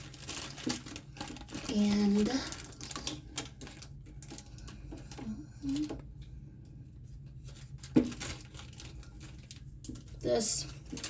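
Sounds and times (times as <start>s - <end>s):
plastic bag crinkling: 0.0s - 6.2s, 7.2s - 11.0s.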